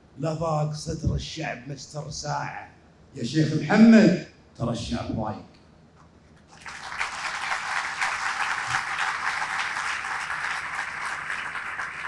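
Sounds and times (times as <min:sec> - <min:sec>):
audience applauding: 0:06.5 - 0:12.0.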